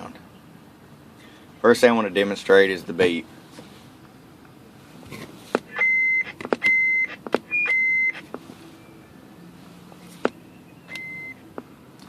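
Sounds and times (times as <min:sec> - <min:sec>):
radio roger beep: 0:05.7 - 0:08.2, 0:10.9 - 0:11.4.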